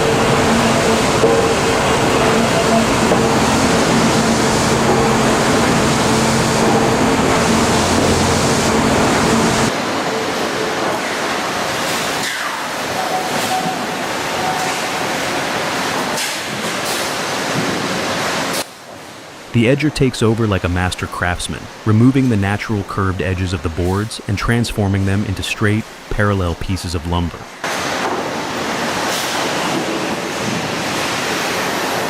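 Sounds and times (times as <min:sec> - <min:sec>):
sawmill machinery drone: 0:00.0 - 0:10.6
hissing machine noise: 0:00.0 - 0:10.8.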